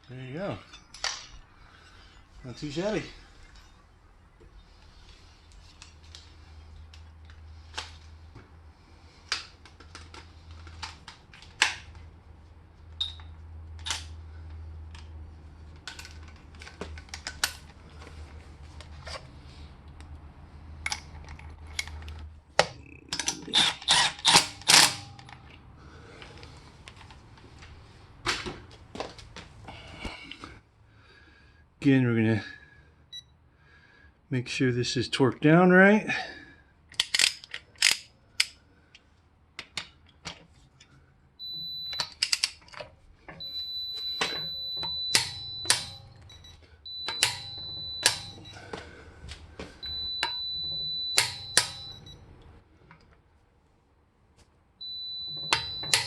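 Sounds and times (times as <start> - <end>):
faint low hum: 40.2 - 56.0.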